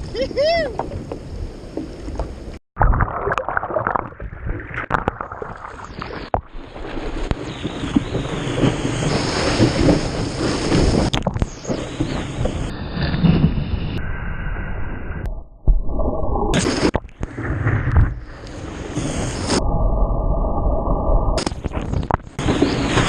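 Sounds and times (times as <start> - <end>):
ocean surf splashing: 5.6 - 13.1.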